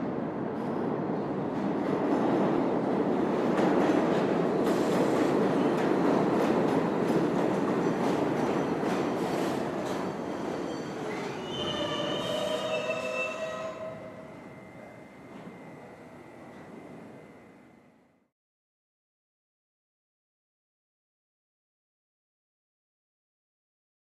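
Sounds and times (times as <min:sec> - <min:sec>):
subway train rumbling on rails: 0:00.0 - 0:18.3
rail clicks: 0:03.4 - 0:11.4.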